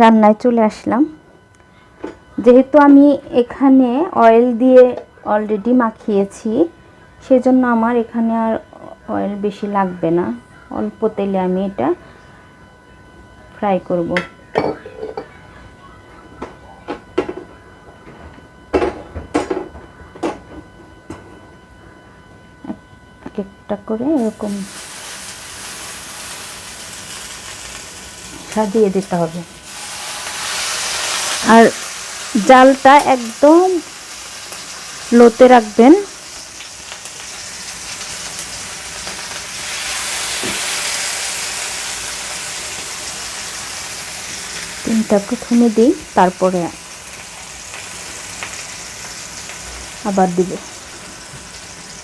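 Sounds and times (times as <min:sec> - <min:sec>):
faint steady hum: 0:00.0 - 0:52.0
meat sizzling in a pan: 0:24.2 - 0:52.0.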